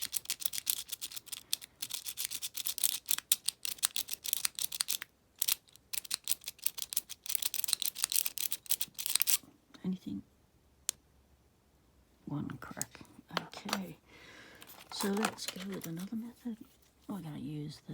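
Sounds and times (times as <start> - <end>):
lock pick raking in padlock: 0.0 - 9.4.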